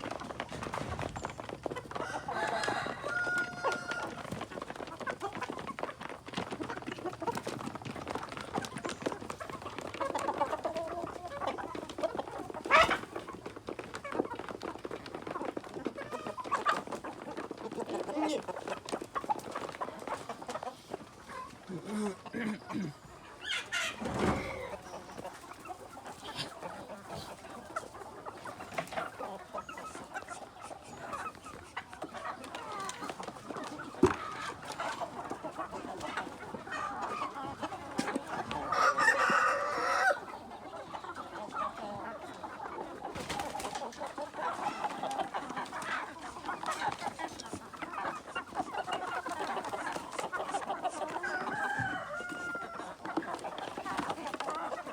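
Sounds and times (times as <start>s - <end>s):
chickens clucking: 0.0s - 54.9s
rooster crowing: 2.0s - 4.2s, 38.8s - 40.2s, 51.2s - 52.9s.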